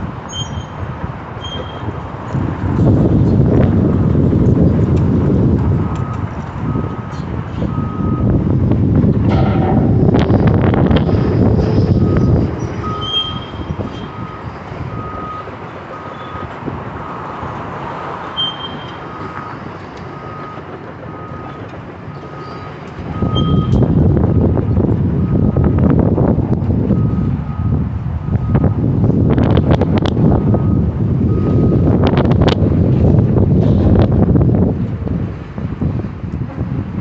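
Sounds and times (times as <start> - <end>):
construction site noise: 0.0 - 37.0
wind buffeting microphone: 0.0 - 37.0
backup alarm beeping: 5.8 - 8.4, 9.3 - 17.3, 18.4 - 24.6, 26.9 - 32.4.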